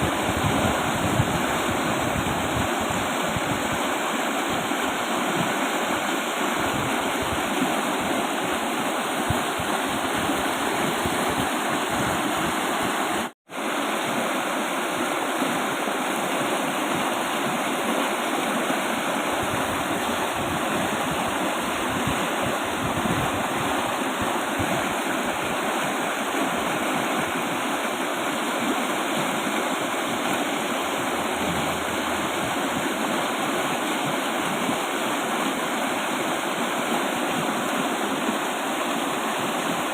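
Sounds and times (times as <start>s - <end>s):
river rushing: 0.0s - 39.9s.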